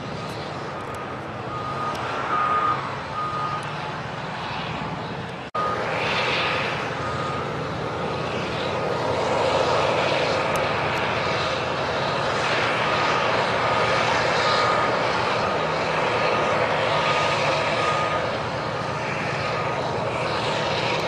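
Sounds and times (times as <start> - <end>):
bulldozer diesel engine roaring: 0.0 - 21.0
reversing alarm beeping: 0.1 - 3.7, 5.6 - 6.0, 6.8 - 8.4, 13.6 - 19.0.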